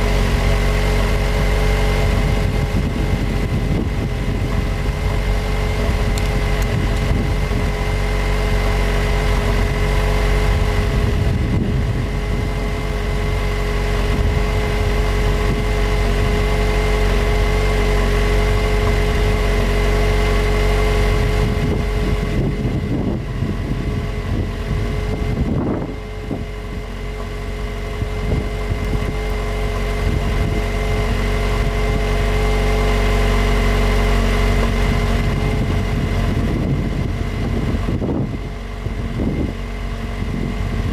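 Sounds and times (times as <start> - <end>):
car engine idling: 0.0 - 40.9.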